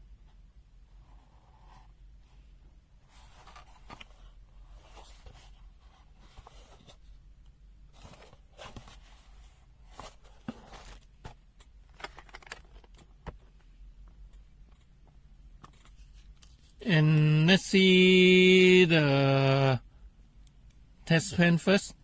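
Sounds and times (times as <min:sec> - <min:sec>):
packaging rustling: 0:10.0 - 0:13.2.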